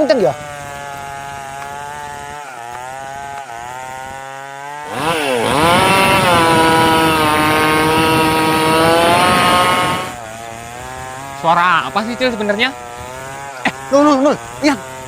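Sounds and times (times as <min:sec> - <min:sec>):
buzzing chainsaw-like drone: 0:00.0 - 0:15.0.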